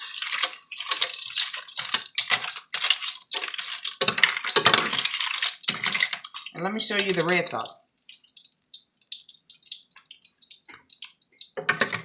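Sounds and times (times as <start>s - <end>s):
shells clattering in a pan: 0.0s - 7.7s, 11.6s - 12.0s.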